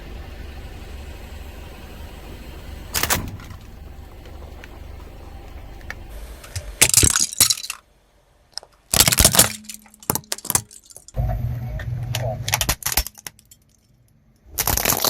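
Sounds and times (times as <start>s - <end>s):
car engine rumble: 0.0s - 14.5s
tyre crushing brittle objects: 8.6s - 11.2s, 14.5s - 15.0s.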